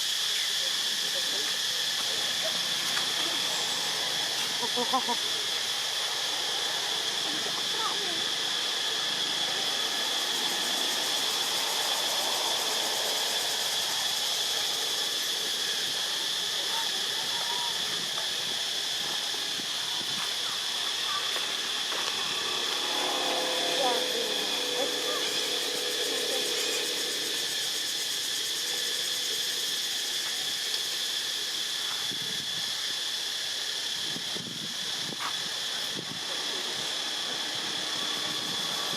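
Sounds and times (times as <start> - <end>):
even hiss: 0.0 - 38.9
insect chorus drone: 0.0 - 38.9
high-pitched drone: 21.0 - 28.1.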